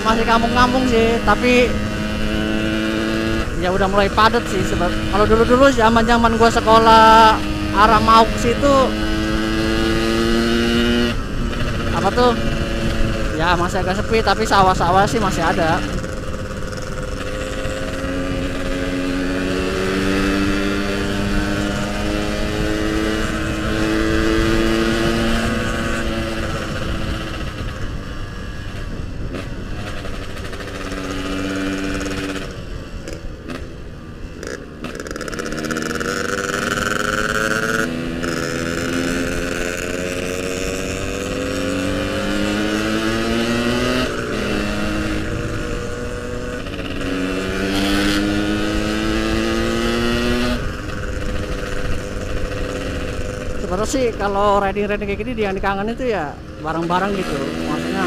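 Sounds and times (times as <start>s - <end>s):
two-stroke motorcycle engine: 0.0s - 58.0s.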